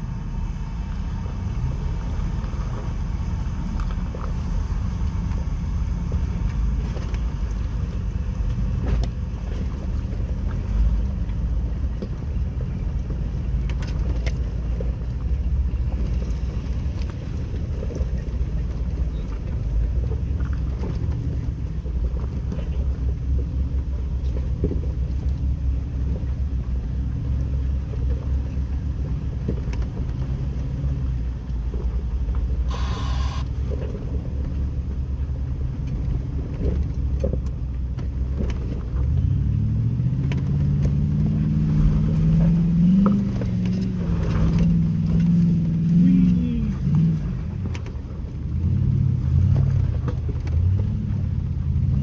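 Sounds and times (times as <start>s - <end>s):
engine low rumble revving under load: 0.0s - 52.0s.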